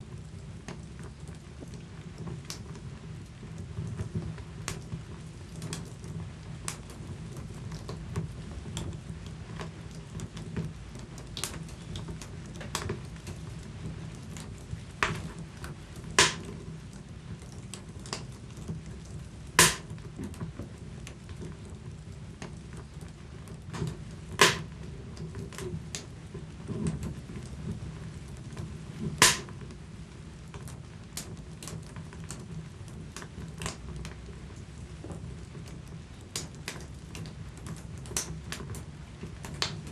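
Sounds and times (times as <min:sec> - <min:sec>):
wood fire crackling: 0:00.0 - 0:39.9
loud sharp pops: 0:16.2 - 0:16.5, 0:19.6 - 0:20.0, 0:24.4 - 0:24.8, 0:29.1 - 0:29.6.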